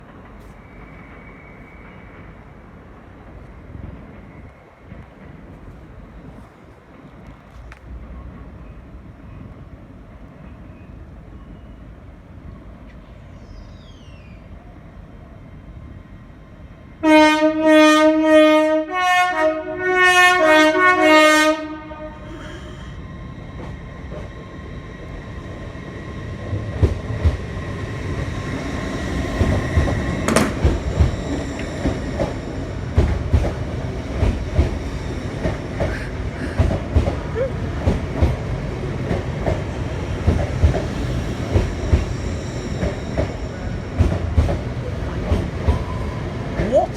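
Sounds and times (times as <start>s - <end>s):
train two-tone horn: 17.0s - 22.7s
train wheels clattering: 23.5s - 46.8s.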